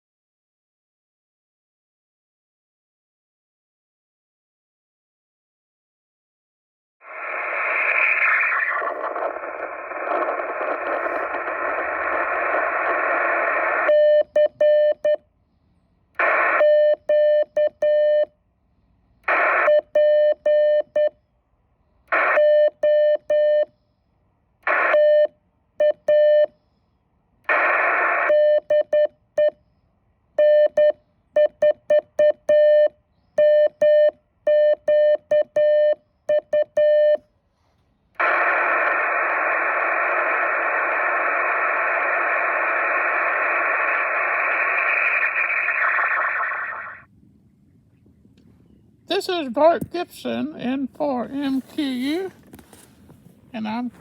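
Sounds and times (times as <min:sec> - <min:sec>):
radio receiver hiss: 0:07.0 - 0:15.1, 0:16.2 - 0:17.4, 0:19.2 - 0:20.4, 0:22.0 - 0:23.6, 0:24.6 - 0:25.3, 0:27.4 - 0:29.5, 0:36.8 - 0:47.1, 0:48.4 - 0:54.0
morse code tone: 0:13.8 - 0:15.2, 0:16.2 - 0:18.3, 0:19.4 - 0:21.2, 0:28.2 - 0:29.6, 0:30.4 - 0:37.2.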